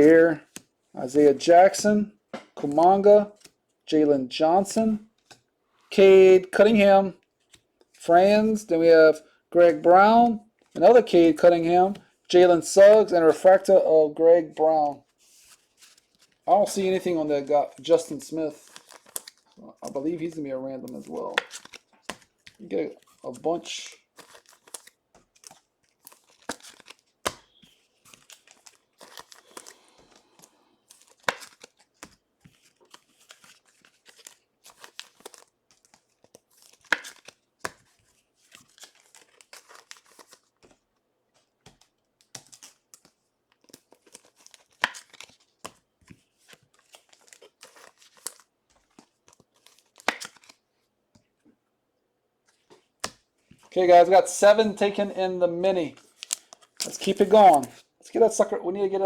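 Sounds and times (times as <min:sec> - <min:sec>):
card wrappers crinkling and tearing: 0:15.0 - 0:50.7, 0:55.8 - 0:57.9
cards clicking: 0:17.9 - 0:22.6, 0:24.2 - 0:37.9, 0:41.4 - 0:45.8, 0:46.5 - 0:50.6, 0:56.1 - 0:57.8.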